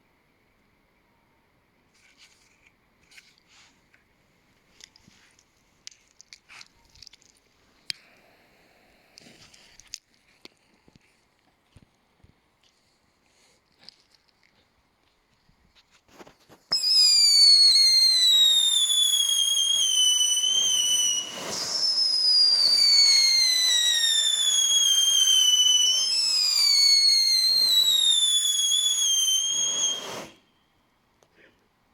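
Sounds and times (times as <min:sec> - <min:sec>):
firework whistling shrilly: 0:16.7 - 0:30.6.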